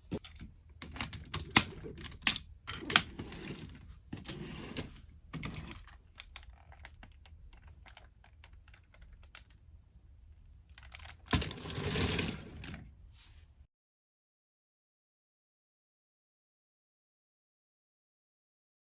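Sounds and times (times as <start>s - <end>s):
plastic toy parts clicking: 0.1s - 3.8s, 5.4s - 9.6s, 10.7s - 11.4s.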